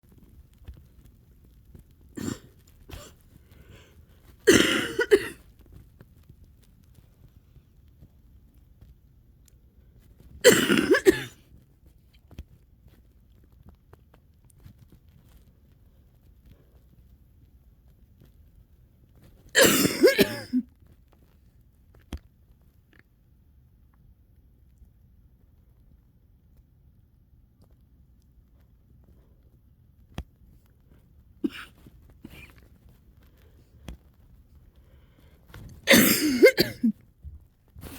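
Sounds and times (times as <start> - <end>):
wet cough: 2.2 - 3.2, 4.5 - 5.4, 10.4 - 11.4, 19.6 - 20.7, 31.4 - 32.5, 35.9 - 37.0.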